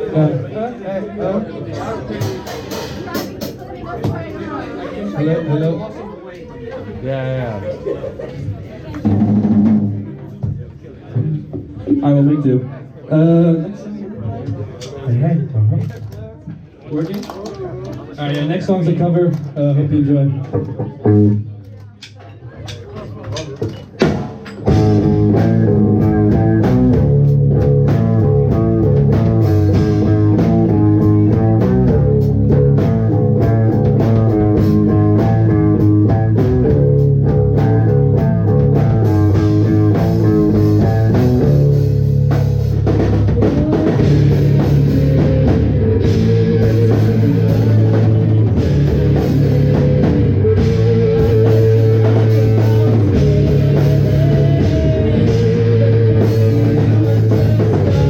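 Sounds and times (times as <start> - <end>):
drum kit: 1.9 - 4.4, 9.0 - 11.8, 22.0 - 58.0
electric guitar riff: 24.7 - 58.0.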